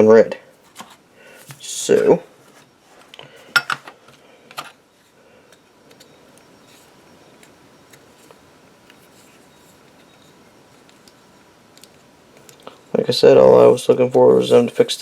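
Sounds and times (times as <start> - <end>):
low room hiss: 0.0 - 15.0.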